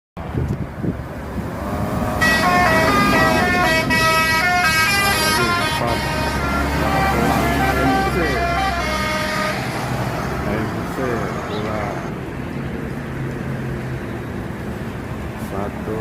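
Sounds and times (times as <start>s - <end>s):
vehicle noise: 0.2s - 16.0s
multi-tone bus horn tune: 2.2s - 12.1s.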